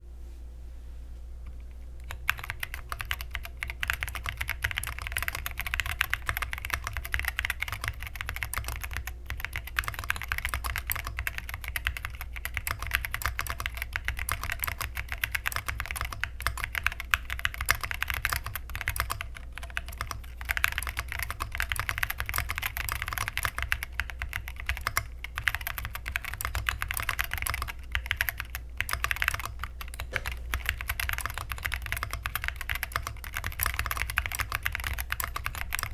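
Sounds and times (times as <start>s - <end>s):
fast typing on keyboard: 2.0s - 35.9s.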